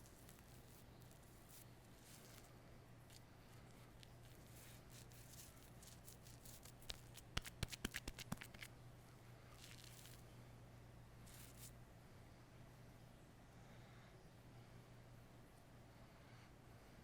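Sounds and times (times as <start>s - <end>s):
razor scraping over stubble: 0.0s - 2.5s, 3.1s - 8.7s, 9.5s - 10.2s, 11.3s - 11.7s.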